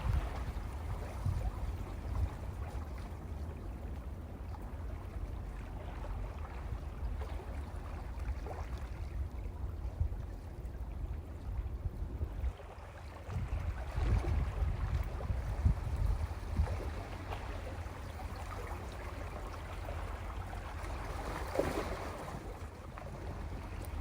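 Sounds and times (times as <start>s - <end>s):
sea waves washing over rocks: 20.8s - 22.5s.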